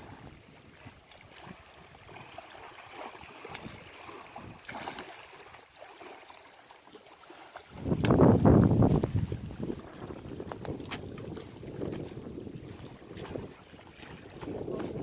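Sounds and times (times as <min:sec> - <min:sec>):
lake waves lapping: 0:00.0 - 0:15.0.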